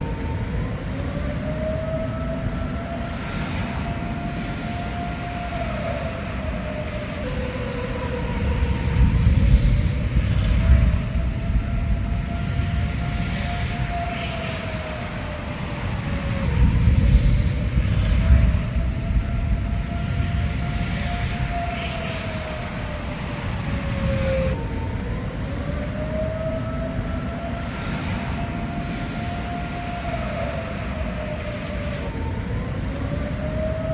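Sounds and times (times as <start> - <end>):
warning siren wailing: 0.0 - 33.9
low rumble: 8.4 - 14.1, 14.8 - 26.0.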